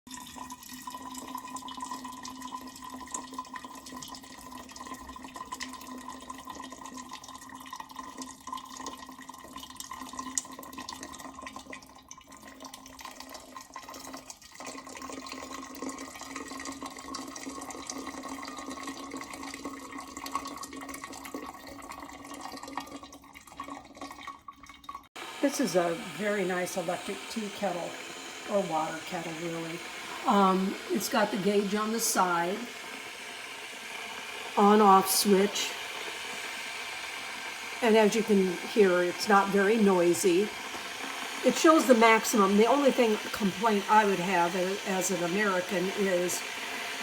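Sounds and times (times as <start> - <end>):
kettle hum: 25.2 - 47.0
kettle water hissing: 25.2 - 47.0.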